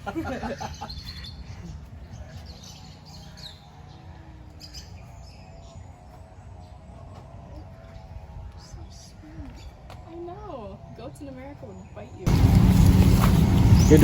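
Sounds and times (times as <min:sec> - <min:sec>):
small birds chirping: 0:00.0 - 0:14.0
low background rumble: 0:12.2 - 0:14.0.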